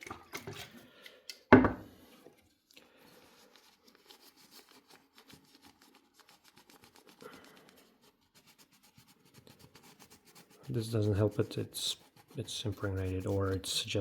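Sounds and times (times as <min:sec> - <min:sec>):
rag rubbing on plastic: 0:07.9 - 0:14.0.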